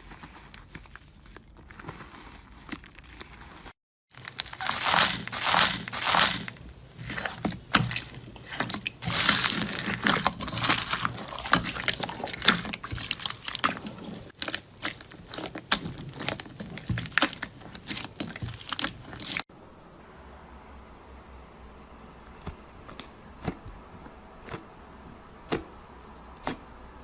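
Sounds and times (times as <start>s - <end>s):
crunching slime crackling: 0.0s - 19.5s.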